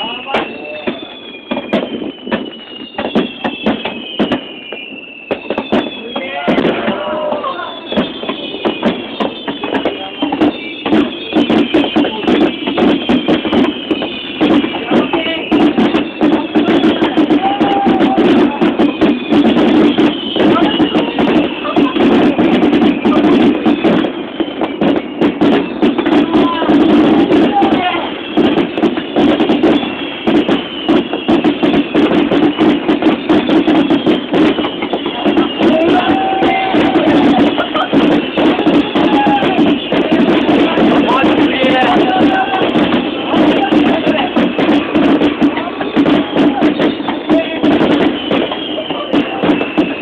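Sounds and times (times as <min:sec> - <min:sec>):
fireworks popping and crackling: 0:00.0 - 0:50.0
loud music with fast beat: 0:34.0 - 0:48.3.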